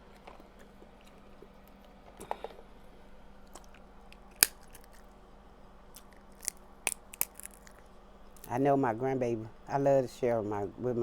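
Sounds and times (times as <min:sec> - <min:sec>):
shell cracking: 0:03.5 - 0:05.1, 0:05.9 - 0:08.5
chewing crab legs: 0:05.9 - 0:07.8.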